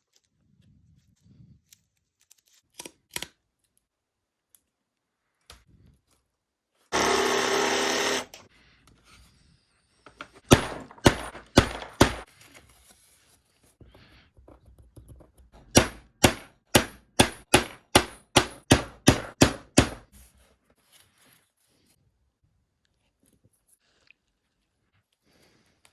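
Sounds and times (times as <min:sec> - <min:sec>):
small power tool running: 0:06.9 - 0:08.5
hammer strikes on leather: 0:10.5 - 0:12.3, 0:15.7 - 0:20.1.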